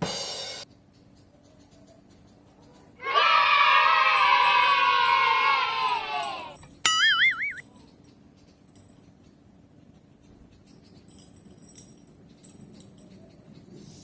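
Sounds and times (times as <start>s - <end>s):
faint light jingling: 0.7s - 3.0s, 6.3s - 14.0s
wavering whistle sound effect: 6.9s - 7.6s.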